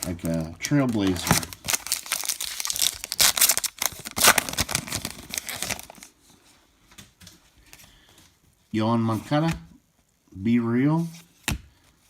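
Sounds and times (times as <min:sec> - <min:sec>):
foil wrapper tearing and crinkling: 0:00.0 - 0:06.1.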